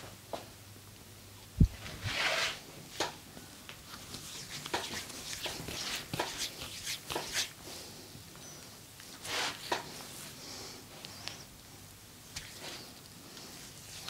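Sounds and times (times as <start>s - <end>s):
hands rubbing skin: 3.9s - 7.6s, 12.3s - 14.0s.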